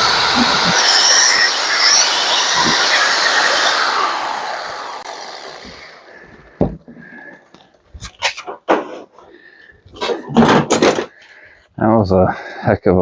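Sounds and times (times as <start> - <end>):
angle grinder cutting metal: 0.0 - 6.1.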